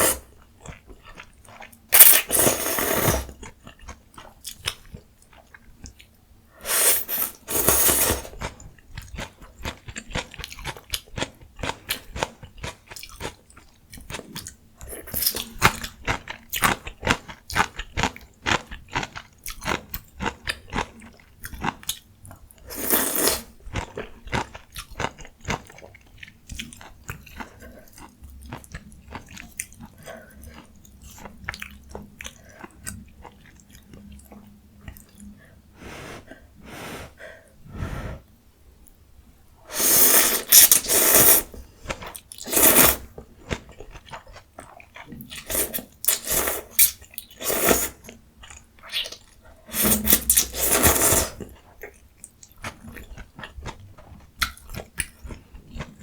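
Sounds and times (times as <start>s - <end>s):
chewing and crunching: 0.3s - 6.1s, 7.1s - 22.7s, 23.6s - 35.4s, 41.6s - 56.0s.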